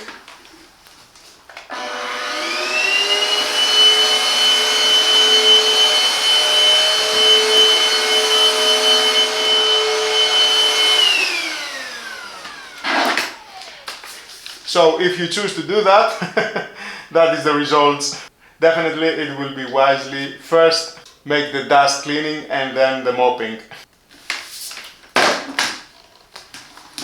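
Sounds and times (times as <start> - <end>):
handheld vacuum cleaner whine: 1.6 - 14.6.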